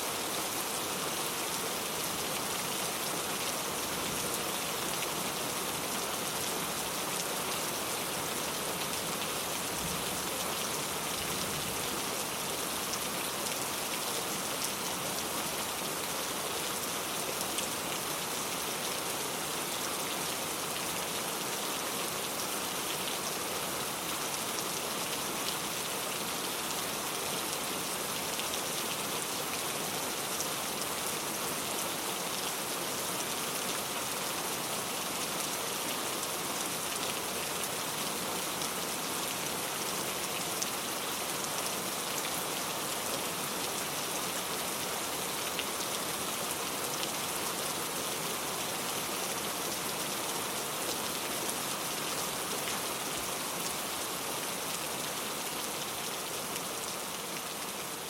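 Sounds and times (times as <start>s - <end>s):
steady rain hiss: 0.0s - 58.0s.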